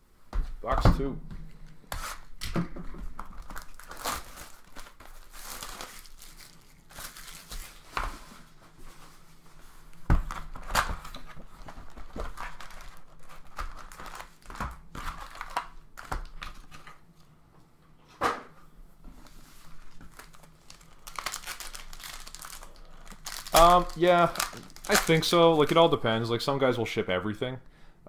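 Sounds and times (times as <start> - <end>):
plastic wrappers crinkling and tearing: 3.2 - 9.2, 9.9 - 17.3, 19.2 - 26.2.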